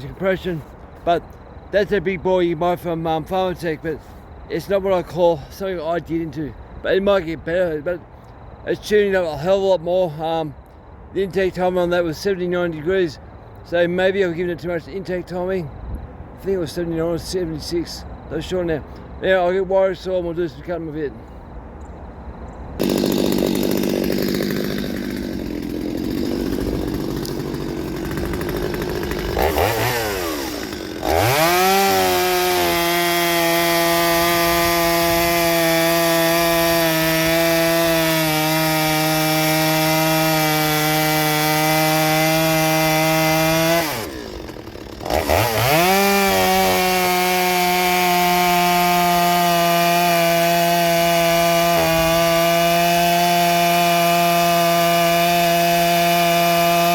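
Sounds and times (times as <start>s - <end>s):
chainsaw cutting wood: 22.8s - 56.9s.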